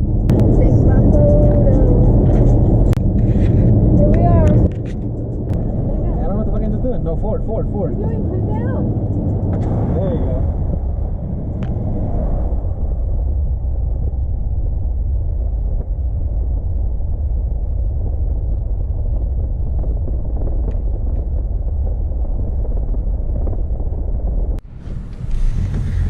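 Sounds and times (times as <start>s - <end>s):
car road and engine rumble: 0.0s - 26.0s.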